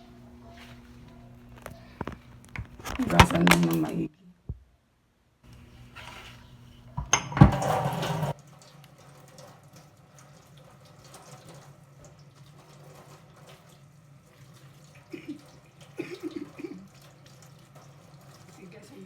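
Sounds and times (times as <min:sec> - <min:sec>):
tap water running into sink: 0:07.0 - 0:19.0.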